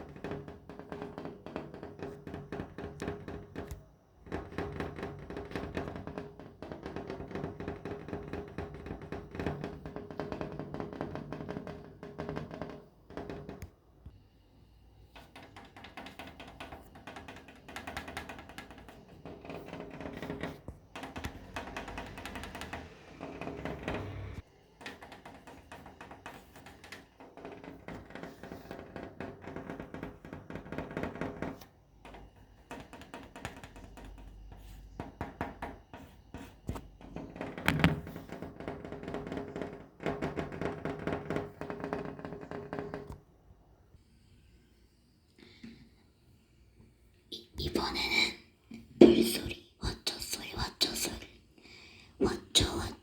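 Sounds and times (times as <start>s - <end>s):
tapping on a window pane: 0.0s - 13.8s, 15.3s - 43.2s.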